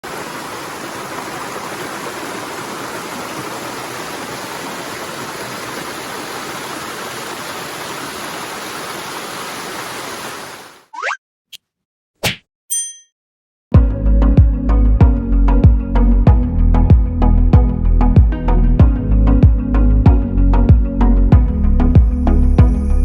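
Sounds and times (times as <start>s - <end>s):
waterfall rushing: 0.0s - 10.9s.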